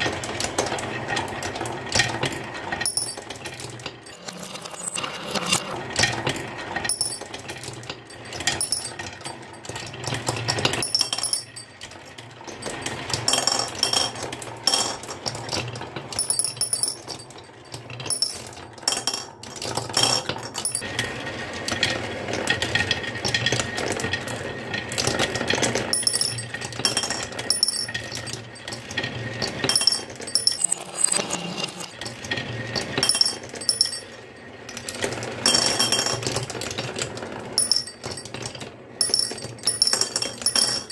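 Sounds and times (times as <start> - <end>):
metallic clinks and rattles: 2.8 - 5.6, 6.9 - 9.7, 10.8 - 11.9, 16.2 - 20.8, 29.7 - 31.9, 33.0 - 36.4, 37.6 - 40.9.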